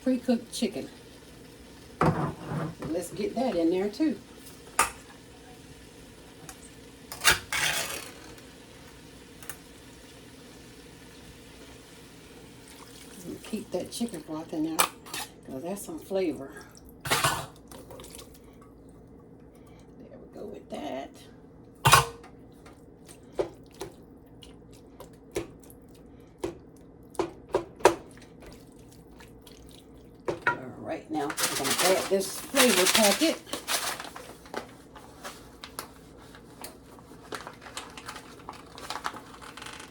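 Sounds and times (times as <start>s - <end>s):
wet squishing and dripping: 17.6s - 20.0s, 22.4s - 27.5s, 28.1s - 30.3s.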